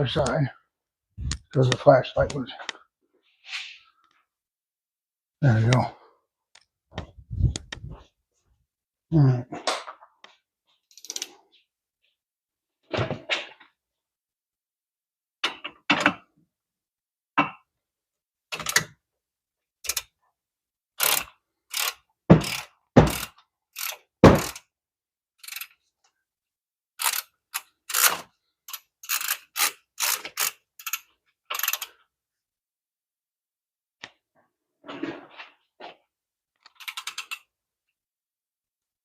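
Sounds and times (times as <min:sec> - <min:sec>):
socket ratchet clicking: 0:21.0 - 0:24.6, 0:27.0 - 0:28.1, 0:28.7 - 0:31.9.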